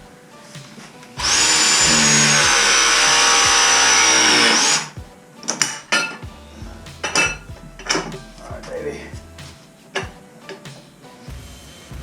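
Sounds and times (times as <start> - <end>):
power tool motor whining: 1.2 - 4.9.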